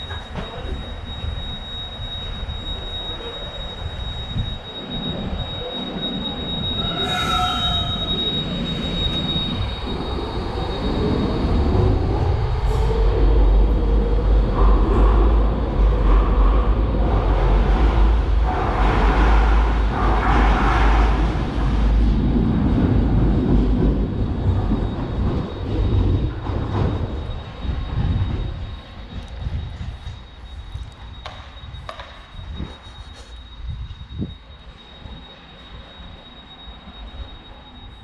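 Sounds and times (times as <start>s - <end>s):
train wheels rumbling on rail: 0.0s - 38.0s.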